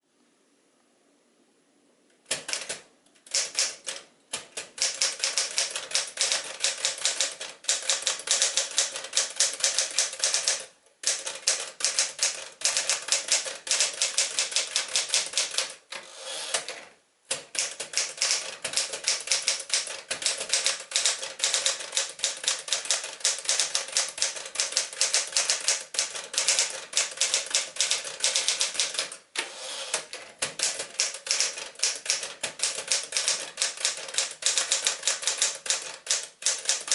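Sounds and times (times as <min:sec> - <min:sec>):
manual typewriter typing: 0:02.3 - 0:15.9, 0:16.5 - 0:29.2, 0:29.8 - 0:36.9.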